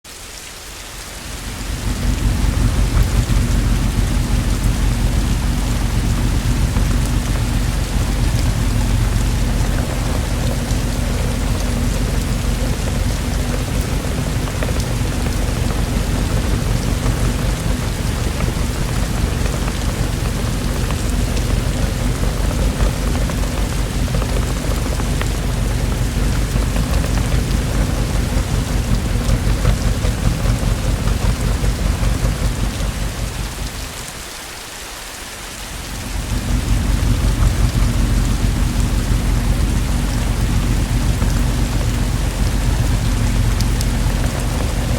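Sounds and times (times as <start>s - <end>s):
heavy rain: 0.0s - 44.9s
low rumble of thunder: 1.2s - 34.2s, 35.7s - 44.9s.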